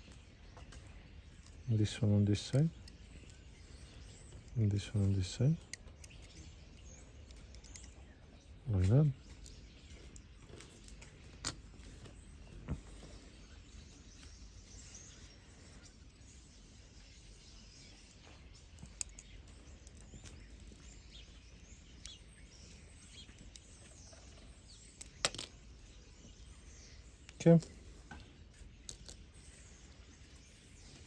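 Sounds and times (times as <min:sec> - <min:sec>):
faint bird chirps: 0:00.0 - 0:31.0
clicks of small parts and tools: 0:05.6 - 0:08.0, 0:18.7 - 0:20.7, 0:25.0 - 0:25.6, 0:28.8 - 0:29.2.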